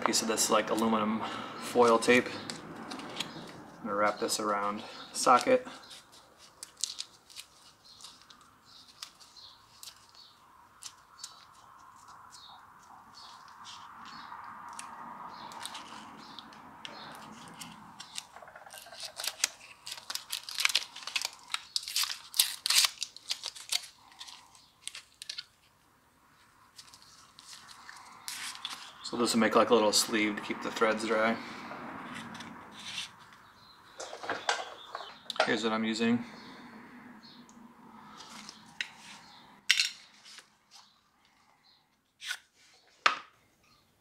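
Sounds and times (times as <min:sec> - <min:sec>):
foil crinkling and crackling: 0:05.2 - 0:12.6, 0:16.9 - 0:25.7
foil tape peeling: 0:05.2 - 0:25.7, 0:26.7 - 0:29.0, 0:42.2 - 0:42.5.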